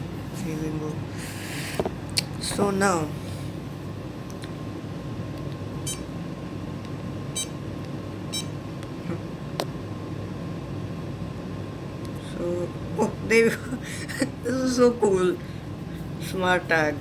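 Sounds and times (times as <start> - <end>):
high-pitched electronic beeps: 5.8 - 6.1, 7.4 - 7.6.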